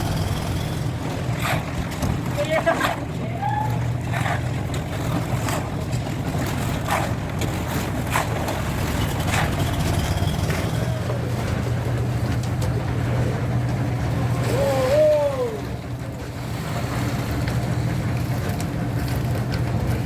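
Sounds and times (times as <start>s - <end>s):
small engine running: 0.0s - 1.7s, 6.4s - 14.4s.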